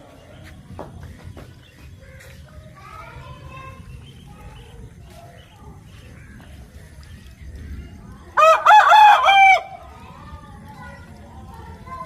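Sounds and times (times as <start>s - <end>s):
rooster crowing: 8.4s - 9.7s.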